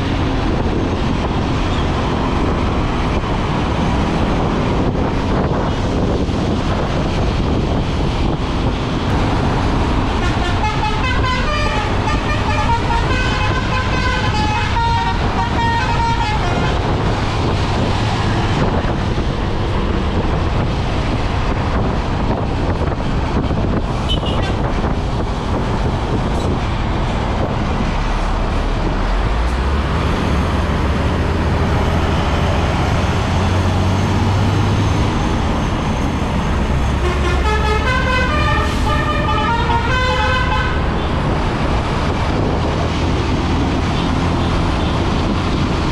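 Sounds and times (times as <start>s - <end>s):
bus engine running: 0.0s - 45.9s
road noise: 0.0s - 45.9s
musical bus horn tune: 10.1s - 17.0s, 36.9s - 41.1s.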